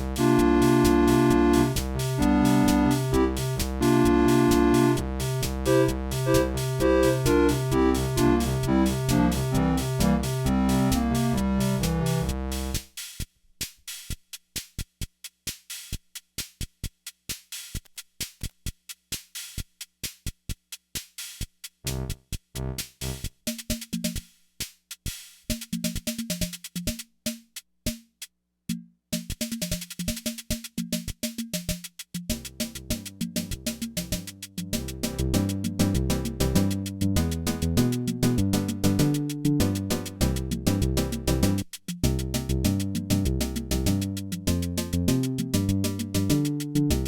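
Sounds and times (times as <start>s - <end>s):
short bass notes: 0.0s - 12.7s
electronic drum pattern: 0.0s - 12.8s, 32.3s - 47.0s
keyboard chord and bass accompaniment: 0.2s - 12.5s, 34.8s - 41.6s, 42.6s - 47.0s.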